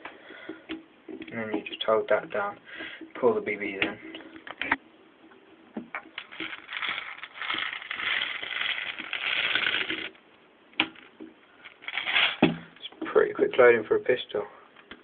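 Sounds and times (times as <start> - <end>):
plastic bbs rattling into magazine: 6.0 - 10.2.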